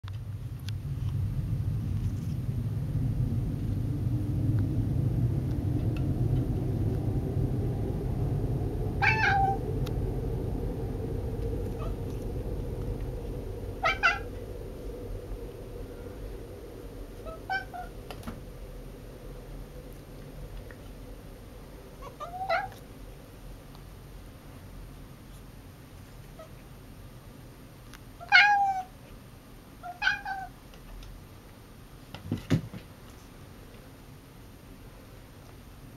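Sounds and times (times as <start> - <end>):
low steady rumble: 0.0 - 35.9
low-pitched sound: 0.3 - 24.0
cat giving high-pitched calls: 9.0 - 9.6, 13.8 - 14.3, 17.2 - 17.9, 22.0 - 22.8, 28.2 - 28.9, 29.8 - 30.6.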